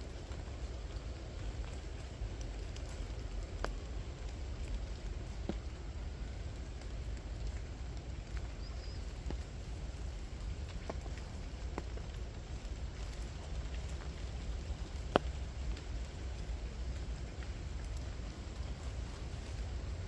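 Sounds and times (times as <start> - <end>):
steady rain hiss: 0.0 - 20.0.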